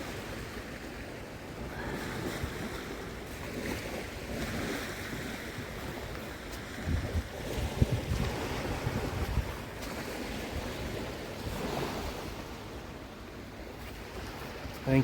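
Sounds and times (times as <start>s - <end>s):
small waves on sand: 0.0s - 15.0s
wind buffeting microphone: 1.6s - 13.0s.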